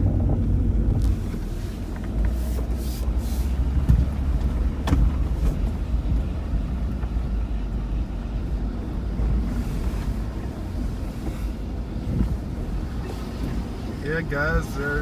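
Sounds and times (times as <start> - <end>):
brake grinding: 0.0 - 7.9
car engine rumble from inside cabin: 0.0 - 15.0.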